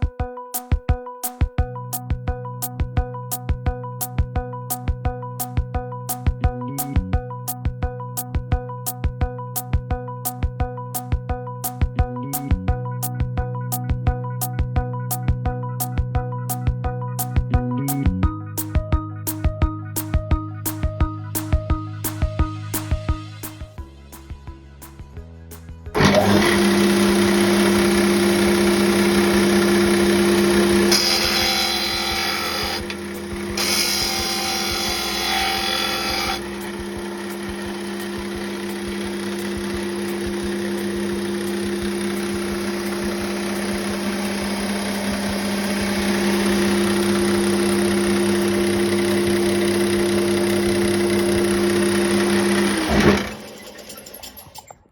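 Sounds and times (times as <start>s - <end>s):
power tool motor humming: 26.0s - 54.3s
tool cutting material: 26.0s - 54.5s.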